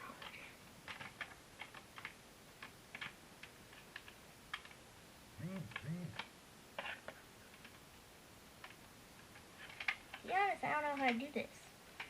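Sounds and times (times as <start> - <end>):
person humming: 5.4 - 6.2.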